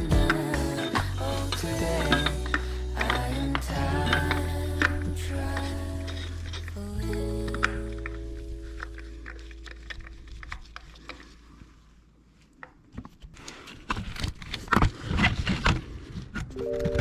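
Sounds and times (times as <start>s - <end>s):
background music: 0.0s - 9.5s, 16.6s - 17.0s.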